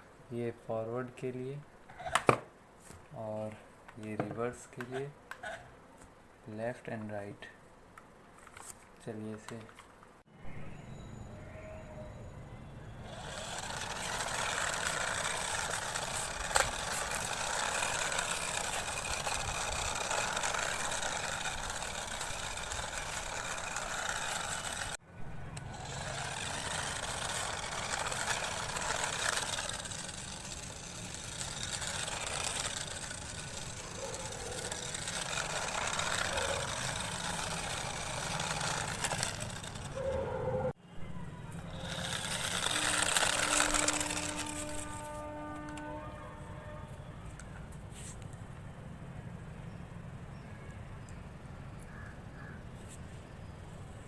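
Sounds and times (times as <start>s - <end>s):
toy car motor whirring: 13.0s - 40.3s, 41.5s - 46.5s.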